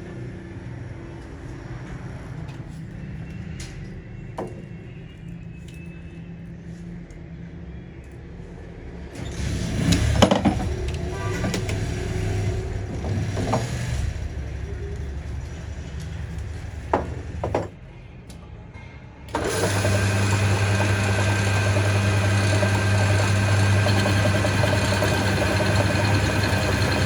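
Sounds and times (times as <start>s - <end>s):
low machine hum: 8.9s - 18.5s, 19.3s - 27.0s.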